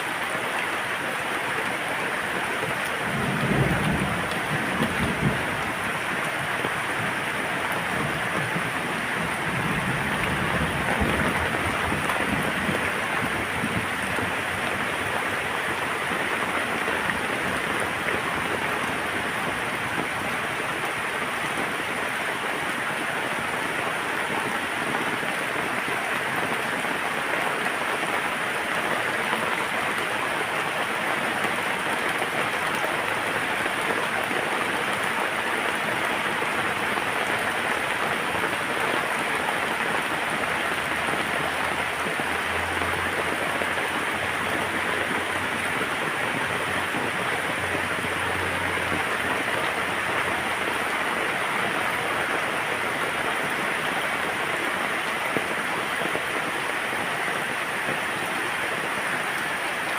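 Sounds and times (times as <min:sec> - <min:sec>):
steady rain falling: 0:00.0 - 0:59.9
low thunder rumble: 0:03.1 - 0:05.9.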